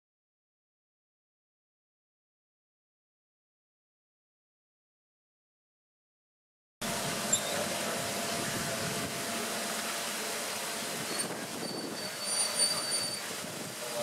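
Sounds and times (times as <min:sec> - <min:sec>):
water noise: 0:06.8 - 0:14.0
wind: 0:06.8 - 0:14.0
thin high squeaks: 0:07.3 - 0:07.6, 0:11.0 - 0:13.3.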